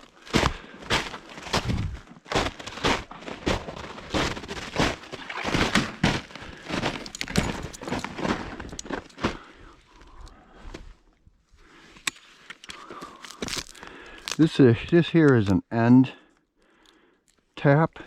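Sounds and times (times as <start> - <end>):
footsteps crunching: 0.0 - 11.0, 12.8 - 15.6.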